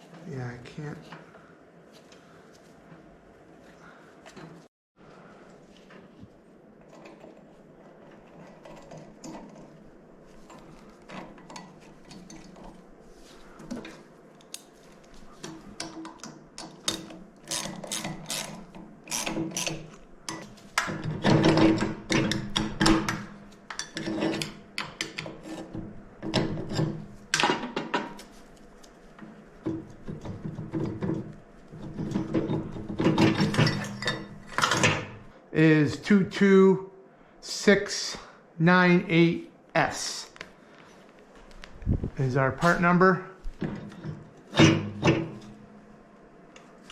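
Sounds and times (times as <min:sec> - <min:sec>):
tools and metal parts clattering: 0:15.3 - 0:28.4, 0:29.7 - 0:35.3, 0:43.5 - 0:45.6.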